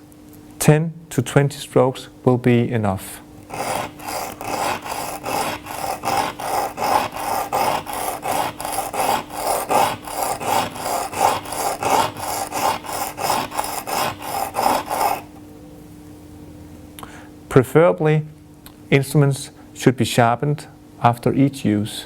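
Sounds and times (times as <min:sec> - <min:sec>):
metal rasping on sharpening stone: 0:03.5 - 0:15.3.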